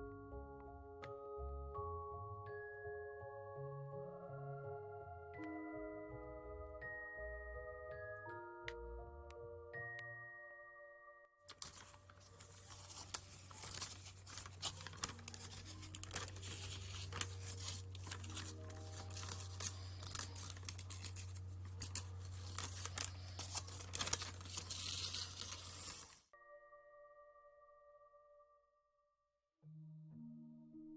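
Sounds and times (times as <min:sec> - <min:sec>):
paper crumpling crackle: 0:11.5 - 0:26.3.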